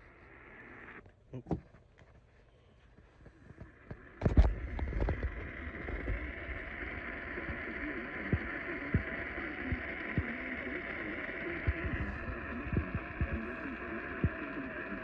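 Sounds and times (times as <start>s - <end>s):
static crackles and pops: 0.0s - 1.3s, 2.8s - 15.0s
radio static hissing: 0.0s - 1.6s, 2.8s - 15.0s.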